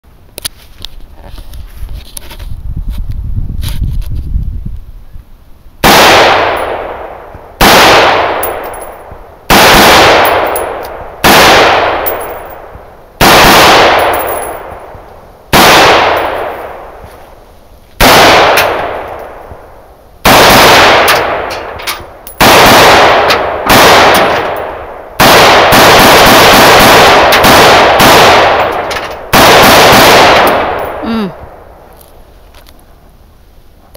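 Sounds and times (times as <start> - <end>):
rifle shots echoing: 5.8 - 17.0, 18.0 - 31.8.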